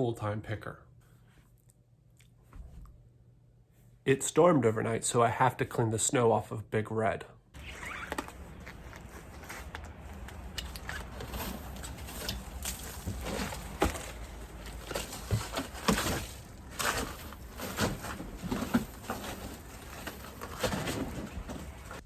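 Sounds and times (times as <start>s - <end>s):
snow scraped off vehicle: 7.6s - 22.0s.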